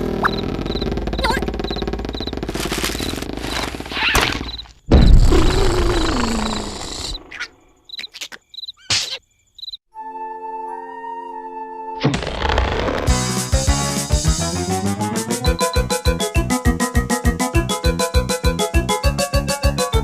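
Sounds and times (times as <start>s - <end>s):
crickets chirping: 0.3s - 9.8s
music: 9.9s - 20.0s.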